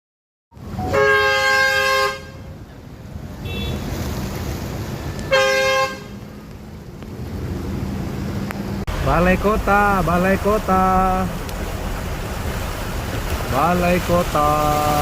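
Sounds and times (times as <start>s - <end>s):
engine and street noise: 0.5s - 15.0s
vehicle horns honking: 0.8s - 2.6s, 3.4s - 4.0s, 5.3s - 6.4s.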